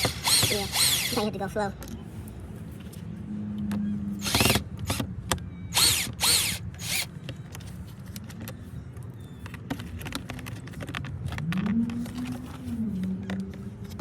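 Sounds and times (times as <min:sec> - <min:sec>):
power drill whirring: 0:00.0 - 0:01.2, 0:04.2 - 0:05.0, 0:05.7 - 0:07.1.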